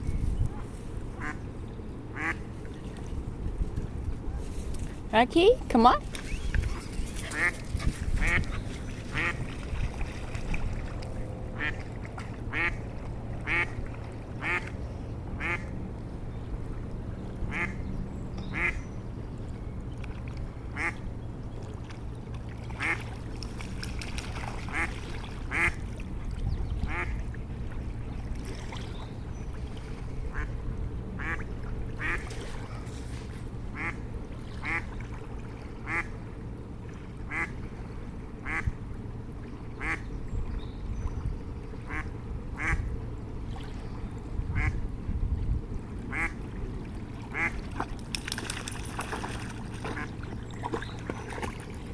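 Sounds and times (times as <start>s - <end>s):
ducks quacking: 1.2s - 1.4s, 2.1s - 2.4s, 6.6s - 9.5s, 11.6s - 11.8s, 12.5s - 12.8s, 13.4s - 13.8s, 14.4s - 14.7s, 15.4s - 15.7s, 18.5s - 18.8s, 20.7s - 21.0s, 24.7s - 25.8s, 31.2s - 31.4s, 33.8s - 34.0s, 35.8s - 36.1s, 37.3s - 37.5s, 38.4s - 38.7s, 39.8s - 40.0s, 46.1s - 46.4s, 47.3s - 47.6s.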